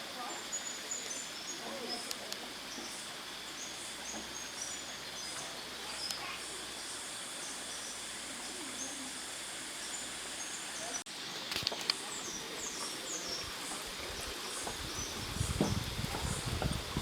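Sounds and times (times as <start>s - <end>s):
steady background hiss: 0.0s - 17.0s.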